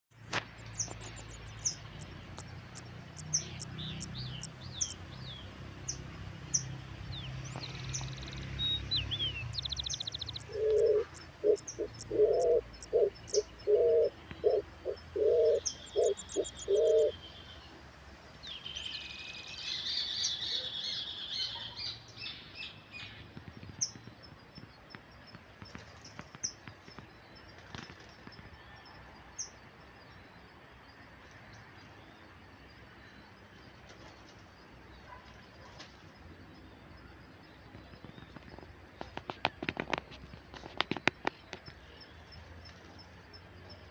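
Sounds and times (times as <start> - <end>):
small birds chirping: 0.1 - 43.9
pigeon cooing: 10.4 - 17.1.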